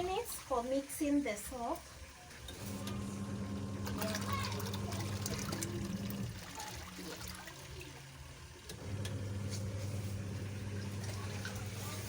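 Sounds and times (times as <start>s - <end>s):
washing machine motor hum: 0.0s - 12.0s
water sloshing: 3.8s - 12.0s.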